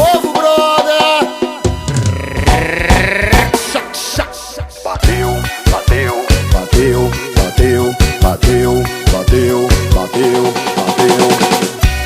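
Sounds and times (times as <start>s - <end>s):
pounding kick drum: 1.7s - 3.6s.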